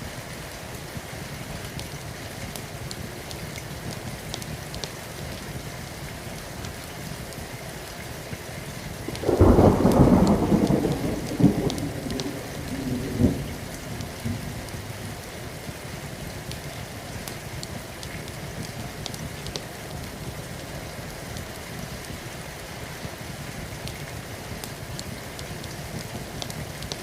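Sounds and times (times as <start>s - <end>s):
steady rain: 0.0s - 27.0s
thunderclap: 9.1s - 14.5s.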